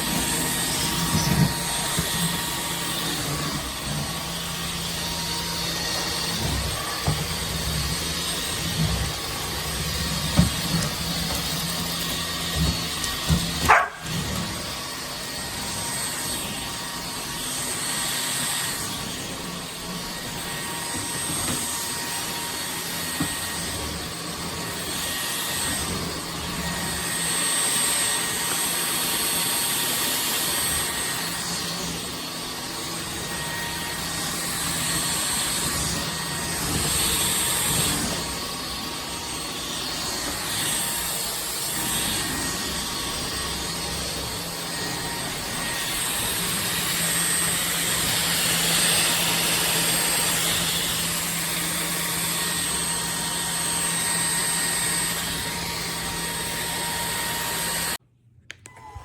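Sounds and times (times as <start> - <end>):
stick vacuum running: 0.0 - 58.0.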